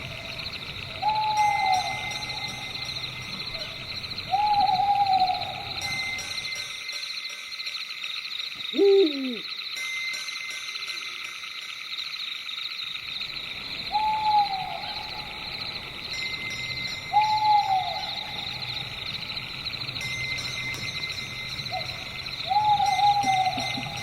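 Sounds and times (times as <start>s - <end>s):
night insects trilling: 0.0s - 24.0s
owl hooting: 4.3s - 5.8s, 8.7s - 9.5s, 13.9s - 15.3s, 17.2s - 18.5s, 21.7s - 24.0s.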